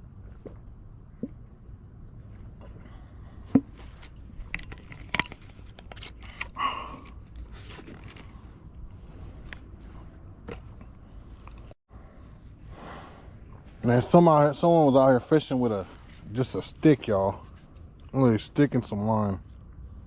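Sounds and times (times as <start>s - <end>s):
steady low rumble: 6.7s - 20.0s
rustling scrape: 7.2s - 9.5s, 15.8s - 16.6s.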